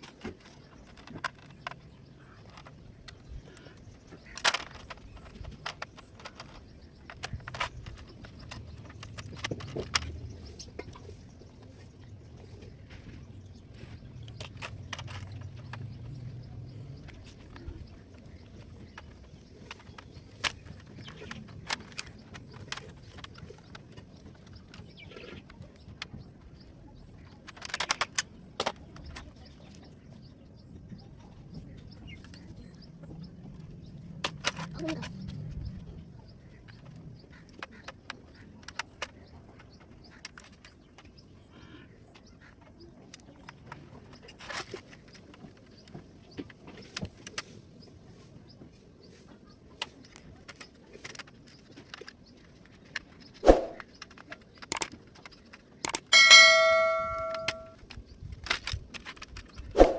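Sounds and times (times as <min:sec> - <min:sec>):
plastic parts clicking and snapping: 0:00.0 - 0:11.2, 0:14.0 - 0:26.5, 0:27.1 - 0:29.8, 0:34.2 - 0:35.4, 0:37.5 - 0:41.2, 0:49.8 - 0:56.2, 0:57.1 - 0:59.7.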